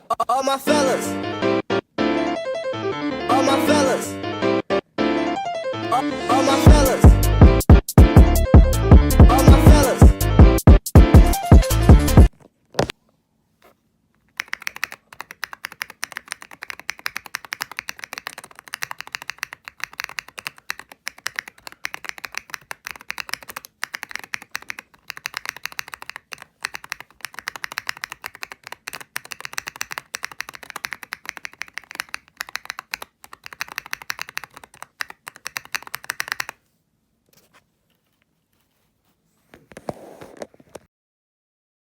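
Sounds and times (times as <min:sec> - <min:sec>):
mechanical keyboard typing: 0:14.3 - 0:36.6.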